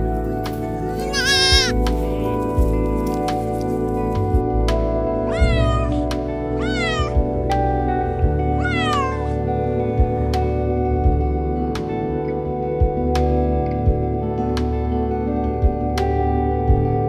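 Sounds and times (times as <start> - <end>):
soft background music: 0.0 - 17.0
cat meowing: 1.0 - 1.8, 5.3 - 7.2, 8.5 - 9.4.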